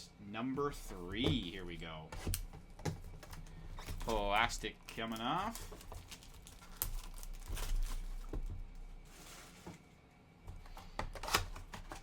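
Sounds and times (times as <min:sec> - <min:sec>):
shrink wrap tearing and crinkling: 0:04.0 - 0:08.4.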